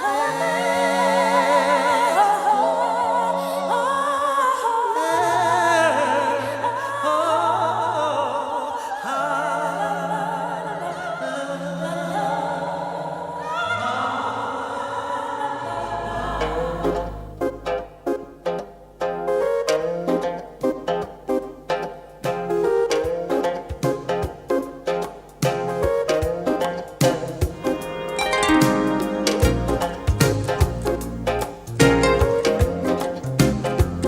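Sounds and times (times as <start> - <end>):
voices singing with vibrato: 0.0 - 18.0, 25.8 - 33.8
sustained low notes: 15.7 - 18.0, 28.2 - 31.4.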